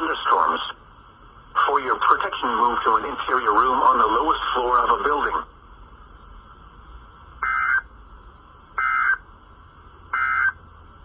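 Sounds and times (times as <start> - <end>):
data tone bursts: 7.4 - 7.9, 8.8 - 9.2, 10.2 - 10.6.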